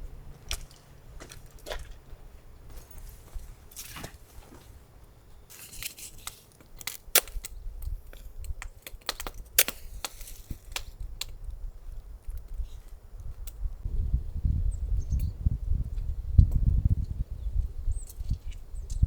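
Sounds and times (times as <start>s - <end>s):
packaging rustling and tearing: 5.5s - 7.5s
steady low rumble: 13.7s - 18.0s.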